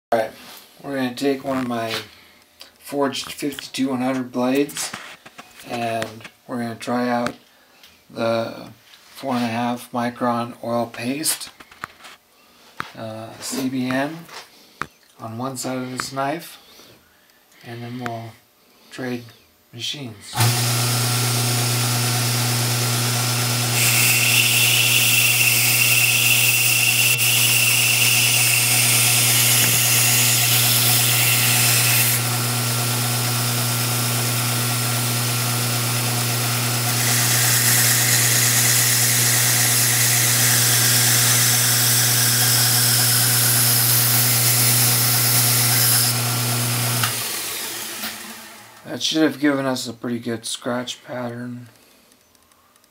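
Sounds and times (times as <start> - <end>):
belt grinder hum: 20.4 - 48.9.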